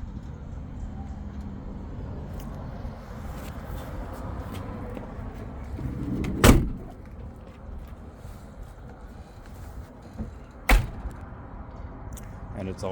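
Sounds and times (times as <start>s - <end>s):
steady low rumble: 4.8s - 8.7s
loud sharp thump: 10.7s - 11.1s.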